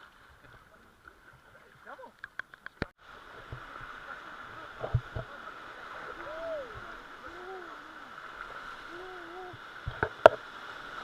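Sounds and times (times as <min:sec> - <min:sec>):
river water rushing: 0:03.0 - 0:11.0
faint voices calling: 0:03.9 - 0:09.8.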